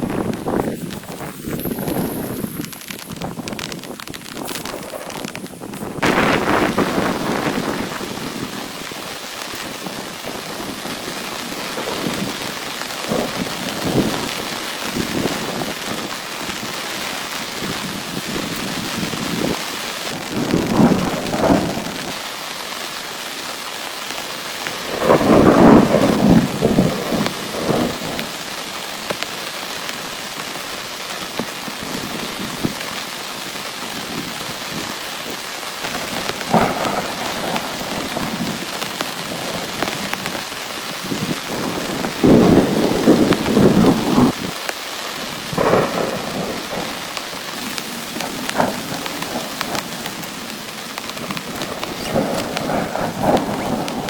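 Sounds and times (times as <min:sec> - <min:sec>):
rolling thunder: 0:00.0 - 0:16.1, 0:17.6 - 0:22.2, 0:24.6 - 0:28.6, 0:35.8 - 0:44.6, 0:45.3 - 0:54.0
heavy rain: 0:00.0 - 0:54.0.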